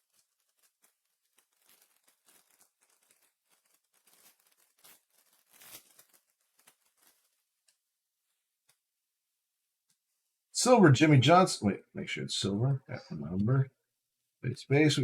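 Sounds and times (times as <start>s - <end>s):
wrapper crinkling and tearing: 0.0s - 7.8s.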